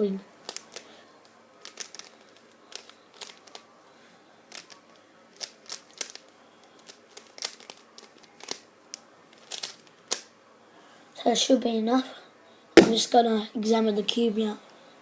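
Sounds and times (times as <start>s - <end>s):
puzzle cube layers clicking: 1.6s - 2.1s, 9.4s - 10.3s.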